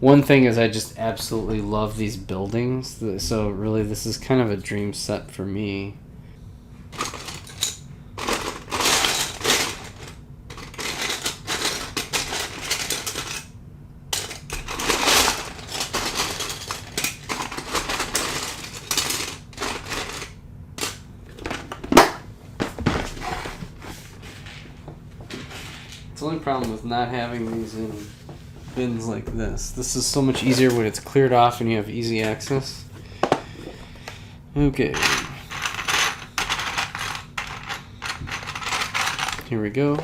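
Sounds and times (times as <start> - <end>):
plastic toy bricks clattering: 7.0 - 13.5, 14.2 - 21.0, 35.0 - 39.5.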